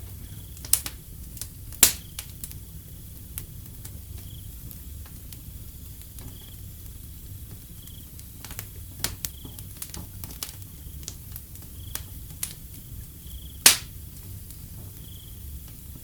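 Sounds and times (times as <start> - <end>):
wood fire crackling and popping: 0.0 - 16.0
cricket chirping: 4.1 - 4.7, 5.8 - 9.8, 10.6 - 16.0.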